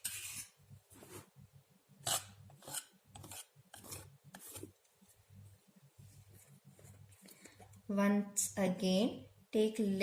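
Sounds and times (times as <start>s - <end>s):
painting knife scraping paint: 0.0s - 1.3s, 2.0s - 4.8s.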